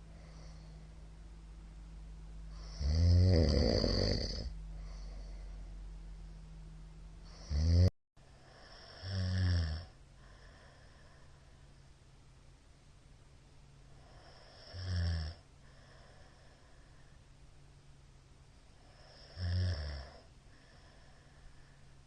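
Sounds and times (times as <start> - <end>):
faint steady hum: 0.0 - 22.0
man snoring loudly: 2.6 - 5.1, 7.3 - 7.9, 8.5 - 10.0, 14.2 - 15.4, 19.0 - 20.2.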